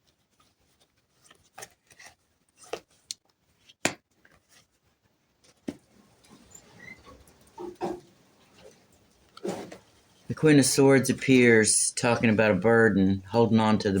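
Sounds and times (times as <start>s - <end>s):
cards slapping and rubbing: 0.6s - 4.7s.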